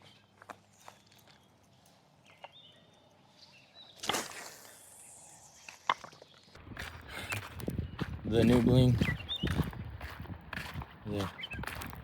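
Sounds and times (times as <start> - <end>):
fishing rod cast swish: 4.0 - 6.0.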